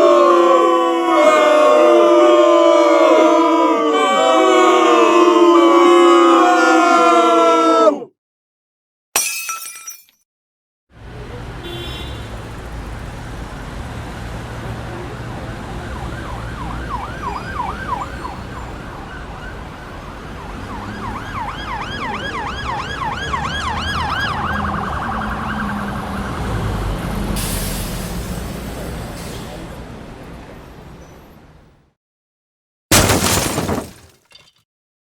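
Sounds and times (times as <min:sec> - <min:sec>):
emergency vehicle siren wailing: 0:00.0 - 0:07.8, 0:14.8 - 0:27.4
low traffic rumble: 0:11.0 - 0:31.6.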